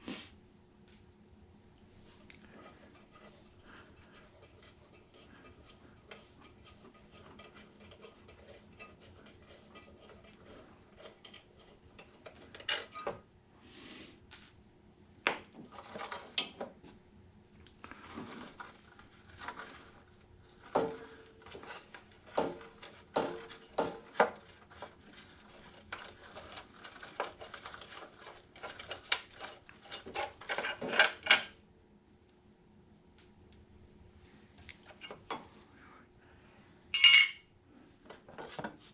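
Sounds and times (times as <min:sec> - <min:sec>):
metal tools clinking: 0:37.0 - 0:37.4.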